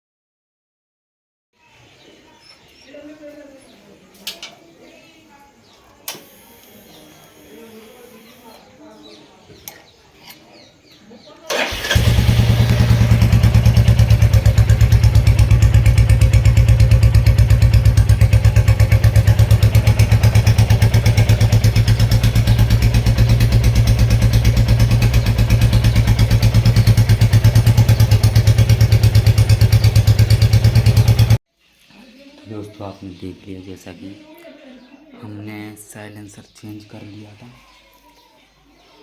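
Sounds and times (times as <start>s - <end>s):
motorcycle engine idling: 11.5s - 31.4s.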